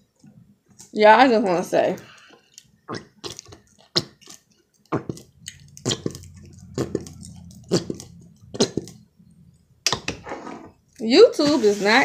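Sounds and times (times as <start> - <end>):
chewing salad: 2.1 - 9.4
low hum: 5.2 - 11.0.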